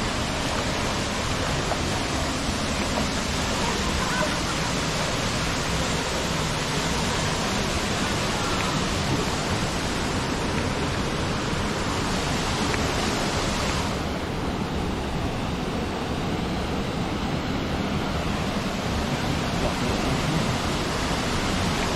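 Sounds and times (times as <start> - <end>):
waterfall rushing: 0.0 - 21.9.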